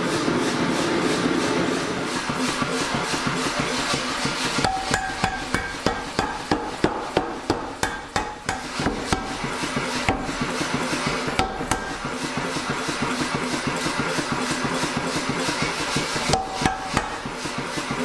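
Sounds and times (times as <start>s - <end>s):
hammer striking steel on anvil: 2.4s - 15.1s, 15.9s - 18.0s
metallic anvil ring: 4.6s - 6.2s.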